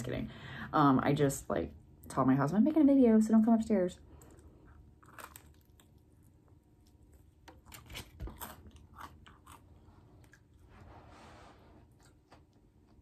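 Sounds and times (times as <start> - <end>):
crunchy chewing: 4.2 - 10.7.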